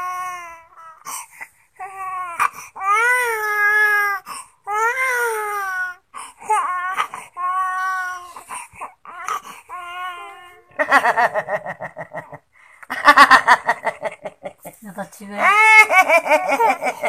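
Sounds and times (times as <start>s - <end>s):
infant crying: 0.0s - 11.3s, 15.4s - 17.0s.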